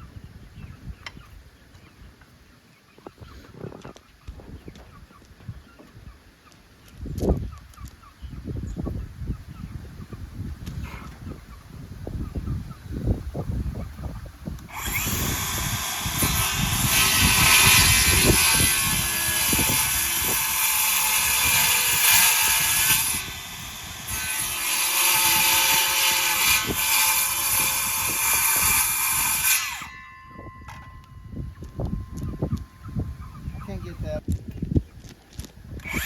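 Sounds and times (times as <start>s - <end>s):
handheld power tool running: 14.7s - 30.0s, 35.8s - 36.0s.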